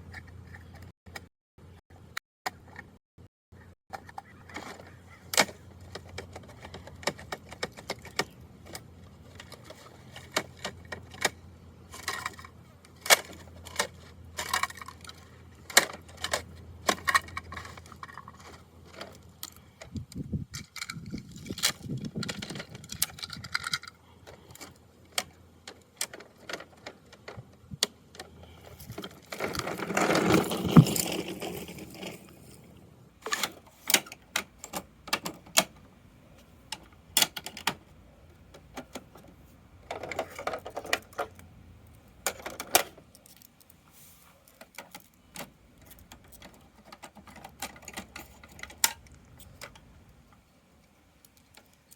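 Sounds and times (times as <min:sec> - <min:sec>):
plastic toy truck clicking and rattling: 0:03.9 - 0:32.6, 0:33.2 - 0:43.8, 0:44.4 - 0:51.9.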